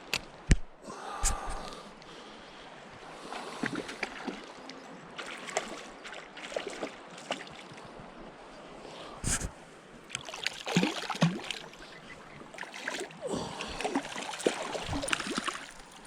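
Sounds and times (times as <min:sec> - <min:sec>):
mountain stream running: 0:00.0 - 0:16.0
small splashes in water: 0:03.3 - 0:07.9, 0:10.1 - 0:16.0.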